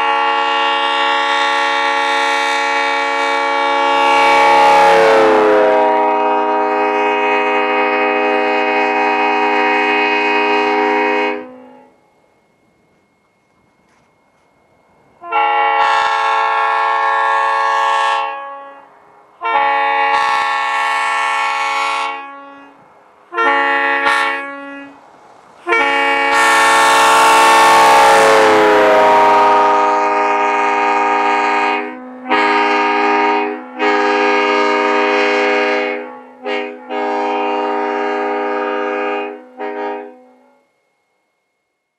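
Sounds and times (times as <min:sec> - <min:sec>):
train air horn blasts: 0:00.0 - 0:12.0, 0:15.2 - 0:41.2
car passing by: 0:04.2 - 0:06.6, 0:22.5 - 0:29.9.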